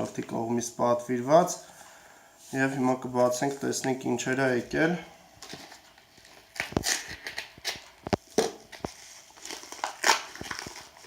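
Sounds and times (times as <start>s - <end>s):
packaging rustling and crinkling: 5.3s - 11.0s.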